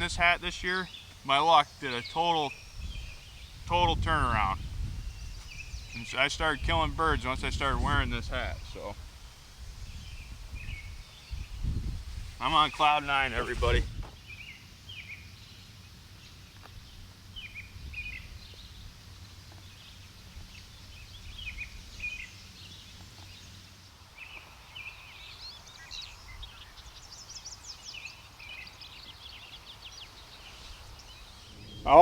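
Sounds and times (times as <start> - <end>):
songbirds chirping and singing: 0.0 - 32.0
low steady rumble: 31.5 - 32.0.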